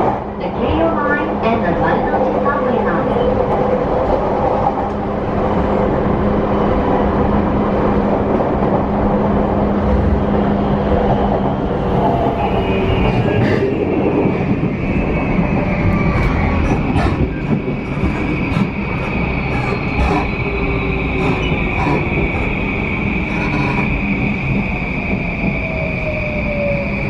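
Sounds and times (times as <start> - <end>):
train wheel-on-rail rumble: 0.0 - 27.0
motor and inverter hum: 15.9 - 24.2
wheels clicking over rail joints: 16.1 - 24.0.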